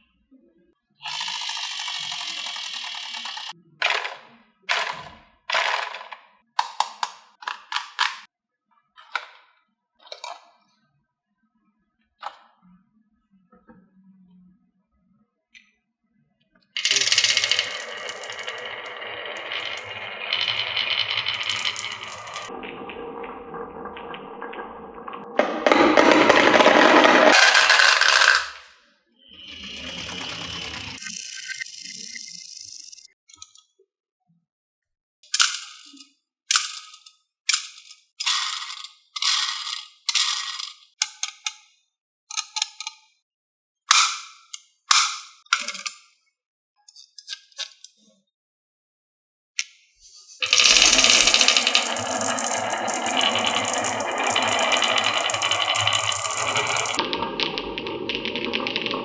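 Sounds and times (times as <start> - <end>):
marbles rattling down wooden track: 1.1 - 6.1, 16.8 - 28.7, 29.5 - 31.0, 36.5 - 40.8, 50.4 - 59.0.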